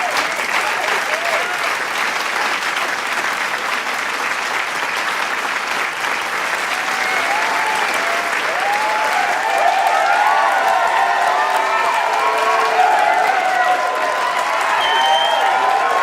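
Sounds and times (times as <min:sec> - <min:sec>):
cheering and whooping voices: 0:00.0 - 0:01.8, 0:06.5 - 0:16.0
crowd applauding: 0:00.0 - 0:16.0.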